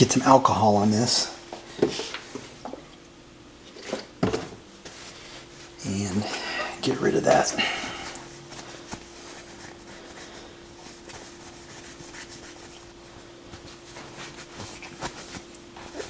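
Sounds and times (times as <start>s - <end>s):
faint steady rubbing: 8.3s - 16.0s.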